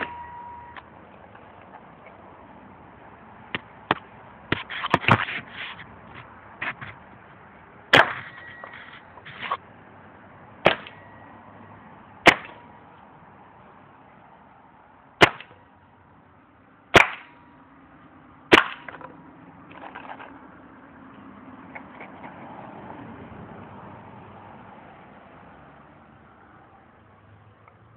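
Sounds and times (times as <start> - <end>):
paintball gun shots: 7.9 - 8.4, 10.7 - 11.0, 12.3 - 12.6, 15.2 - 15.5, 17.0 - 17.3, 18.5 - 19.0.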